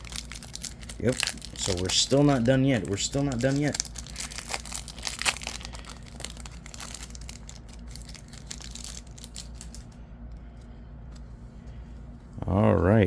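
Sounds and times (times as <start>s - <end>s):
wrapper crinkling: 0.0s - 10.0s.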